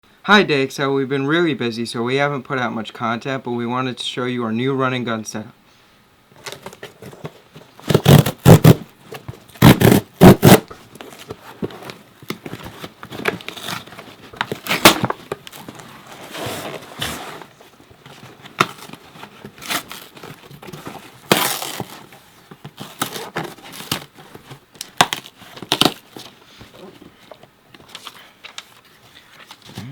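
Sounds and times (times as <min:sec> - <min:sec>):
cardboard ripping: 0:06.4 - 0:26.9
cardboard scraping and crinkling: 0:06.4 - 0:29.9.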